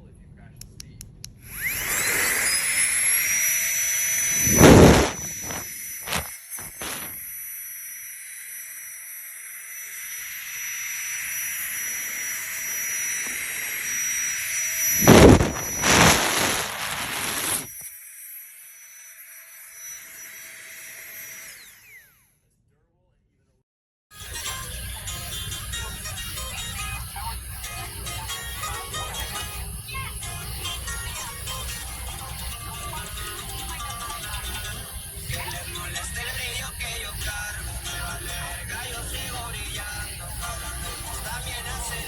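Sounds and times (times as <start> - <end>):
electric air pump whining: 1.4 - 22.2, 24.2 - 42.0
rush of air: 4.4 - 7.2, 14.9 - 17.7.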